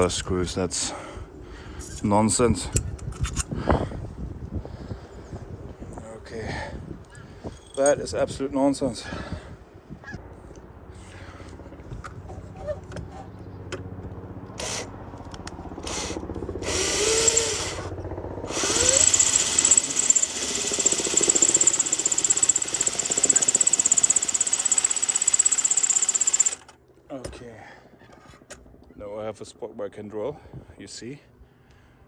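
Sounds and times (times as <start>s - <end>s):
power drill whining: 14.6s - 14.9s, 15.8s - 17.9s, 18.5s - 26.8s.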